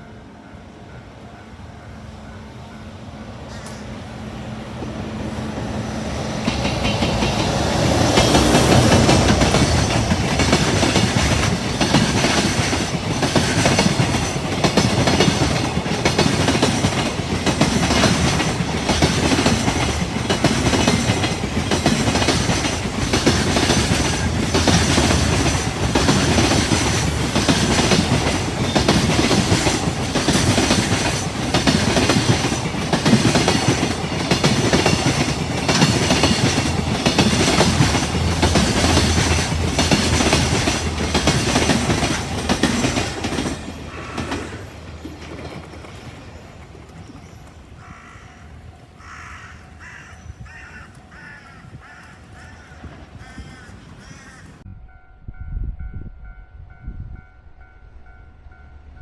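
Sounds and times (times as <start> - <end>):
train passing: 0.0 - 59.0
wheels clacking over rail joints: 6.3 - 47.7.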